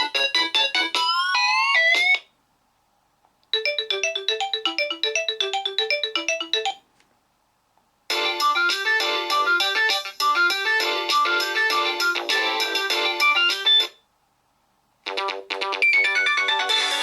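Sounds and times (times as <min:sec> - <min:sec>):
mobile phone ringtone: 0:03.6 - 0:06.8.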